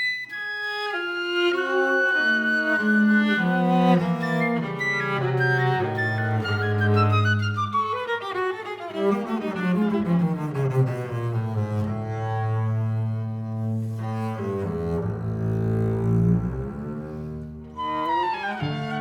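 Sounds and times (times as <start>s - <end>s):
viola bowing: 0.0s - 19.0s
double bass long low notes: 10.8s - 17.8s.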